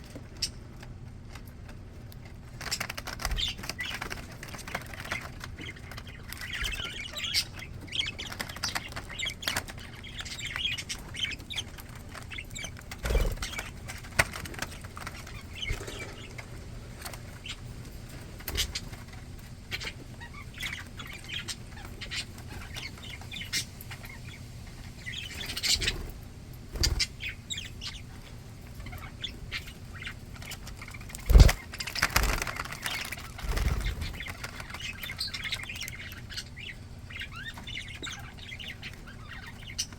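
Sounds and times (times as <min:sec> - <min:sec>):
budgies chattering and chirping: 0:00.1 - 0:01.6, 0:02.2 - 0:39.9
wings fluttering: 0:10.9 - 0:20.8, 0:30.4 - 0:35.6.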